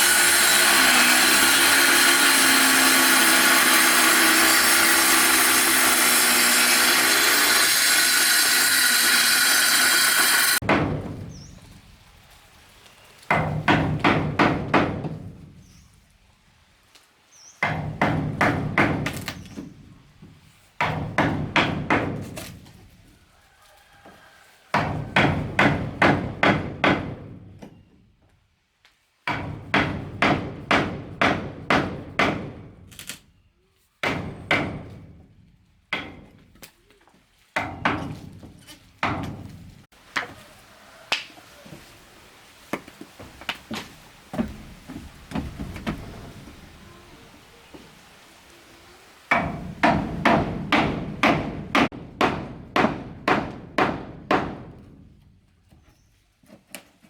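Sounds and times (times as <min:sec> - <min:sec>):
hammer striking wooden planks: 0:00.0 - 0:11.2, 0:13.3 - 0:15.3, 0:17.6 - 0:19.7, 0:20.8 - 0:22.5, 0:24.8 - 0:27.7, 0:29.3 - 0:32.7, 0:34.0 - 0:35.1, 0:49.3 - 0:55.1.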